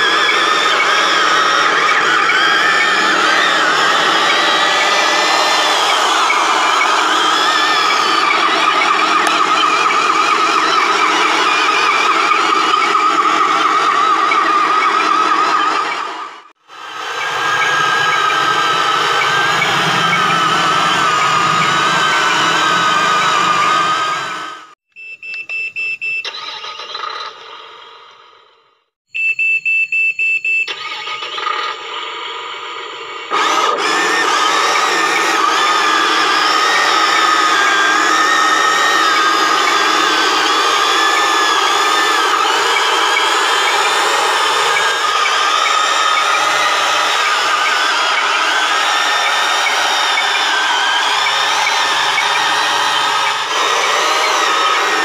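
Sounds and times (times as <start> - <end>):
loud full din: 0.0 - 24.8, 33.3 - 55.0
toy excavator motor whine: 0.0 - 24.8, 30.7 - 55.0
short electronic beeps: 29.1 - 31.2.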